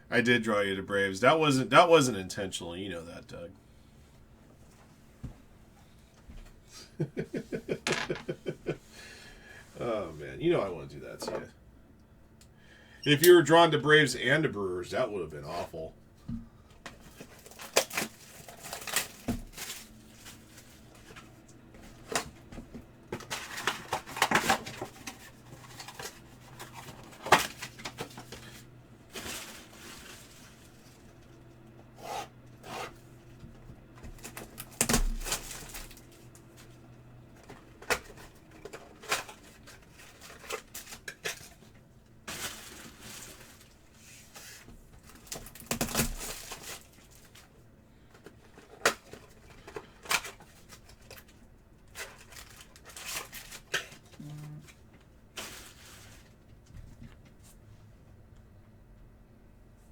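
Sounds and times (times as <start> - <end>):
wrapper crinkling and rustling: 17.0 - 21.2, 23.2 - 31.2, 34.2 - 36.3, 37.8 - 47.5, 48.4 - 54.2, 55.3 - 56.4.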